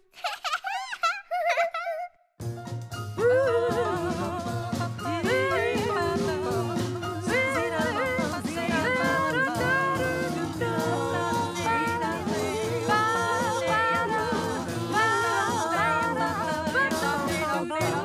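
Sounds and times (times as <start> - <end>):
upbeat children's song music: 2.4 - 18.0.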